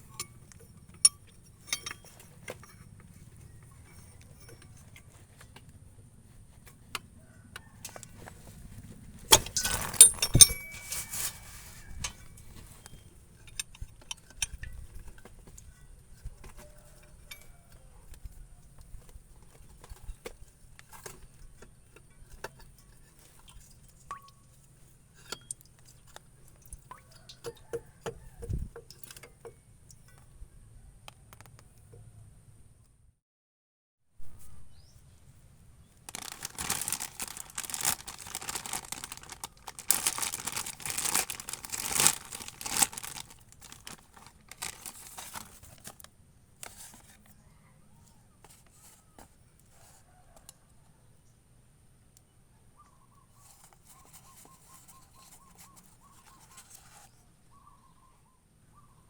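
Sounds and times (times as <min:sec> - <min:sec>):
metal tools clinking and rattling: 0:00.0 - 0:05.2, 0:09.3 - 0:15.9, 0:36.1 - 0:45.8.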